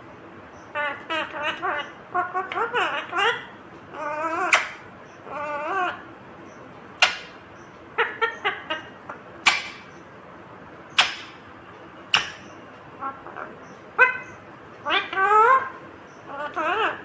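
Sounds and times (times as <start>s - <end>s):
parakeet warbled call: 0.6s - 6.2s, 7.0s - 10.1s, 10.8s - 17.0s
parakeet sharp chirps: 9.4s - 10.0s, 10.9s - 11.5s.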